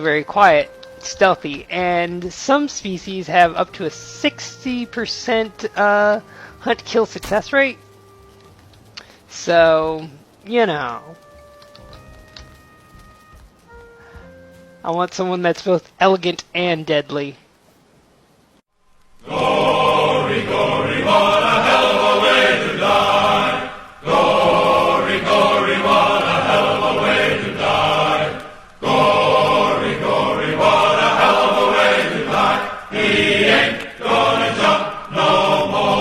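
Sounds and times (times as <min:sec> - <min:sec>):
choir singing: 0:00.0 - 0:07.8, 0:19.2 - 0:36.0.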